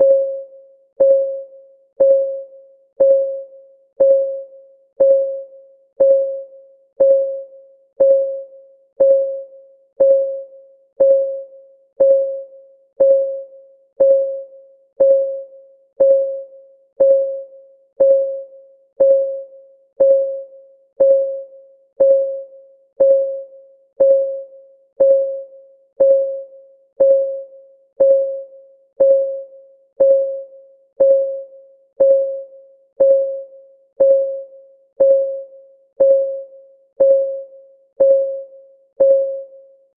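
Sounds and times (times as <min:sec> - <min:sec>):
electronic timer ticking: 0:01.0 - 0:01.4, 0:02.0 - 0:39.5.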